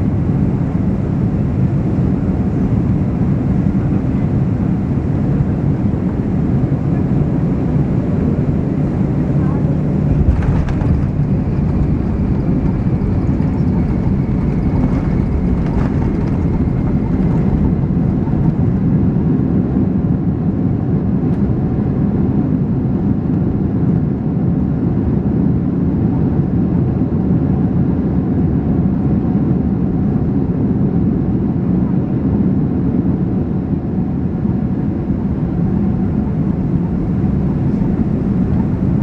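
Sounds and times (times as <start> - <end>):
faint high whine: 0.0 - 19.3
airplane cabin rumble: 0.0 - 25.0, 29.8 - 39.0.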